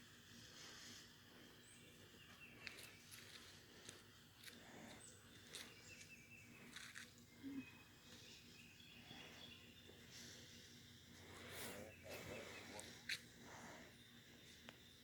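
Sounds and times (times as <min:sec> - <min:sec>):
faint bird chirps: 0:04.8 - 0:15.0.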